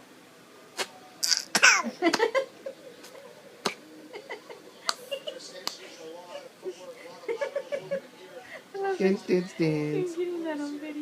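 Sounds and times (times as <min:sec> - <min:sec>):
baby imitating a cough: 0:01.2 - 0:01.9.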